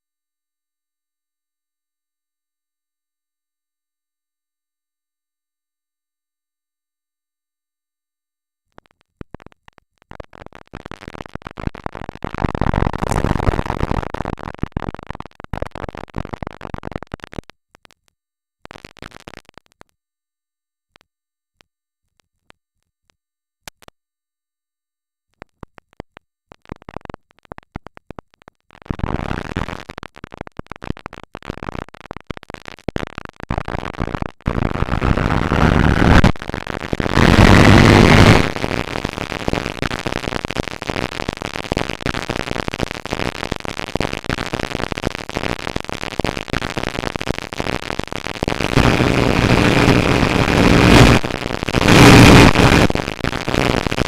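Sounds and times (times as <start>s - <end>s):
distorted noise: 33.5s - 54.0s.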